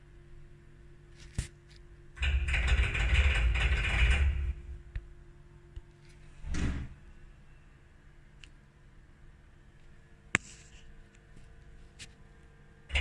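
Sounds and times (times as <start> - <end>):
machine grinding rattle: 2.2 - 4.8.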